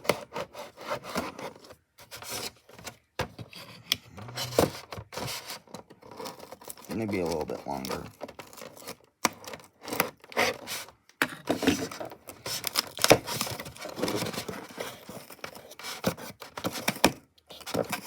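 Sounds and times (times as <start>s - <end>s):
tape and cardboard tearing: 11.5s - 18.0s.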